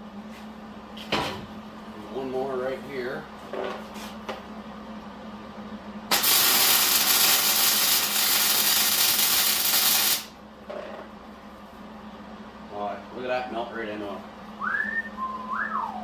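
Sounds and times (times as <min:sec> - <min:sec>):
welding arc sizzling: 0:06.1 - 0:10.4.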